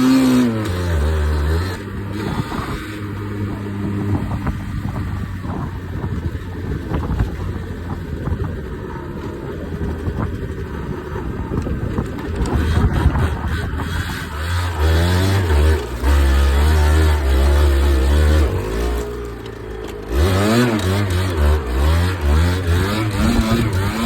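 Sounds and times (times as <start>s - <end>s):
two-stroke engine revving: 0.0s - 8.8s, 9.6s - 24.0s.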